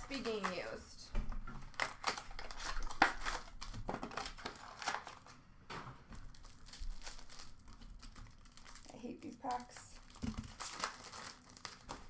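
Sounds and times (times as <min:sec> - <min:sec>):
packaging crinkling: 0:00.0 - 0:00.8, 0:01.6 - 0:05.4, 0:06.1 - 0:12.0
sharp packaging rip: 0:01.7 - 0:05.2, 0:10.1 - 0:12.0.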